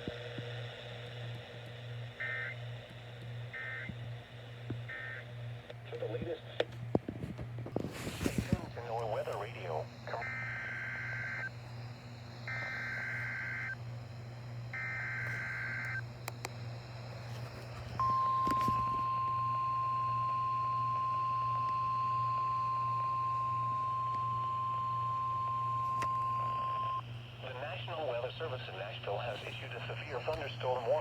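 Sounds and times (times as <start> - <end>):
steady warning alarm tone: 2.1 - 5.4, 8.3 - 27.5
clicks: 15.2 - 16.6.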